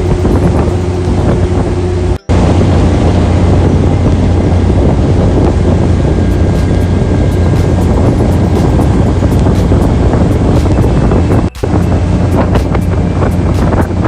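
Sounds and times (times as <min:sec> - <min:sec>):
ferry engine humming: 0:00.0 - 0:14.0
rushing water: 0:00.0 - 0:14.0
wind buffeting microphone: 0:00.0 - 0:14.0.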